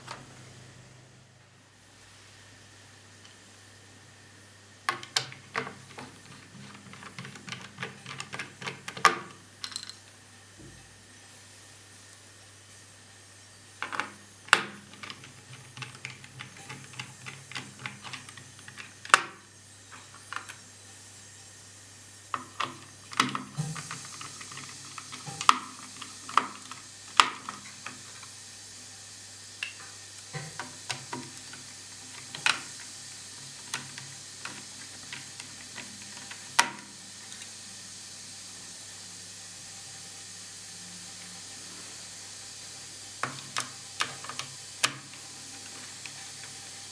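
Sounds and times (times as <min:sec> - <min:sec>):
faint steady hiss: 0:00.0 - 0:46.9
screwdriver clicks and taps: 0:04.9 - 0:10.0.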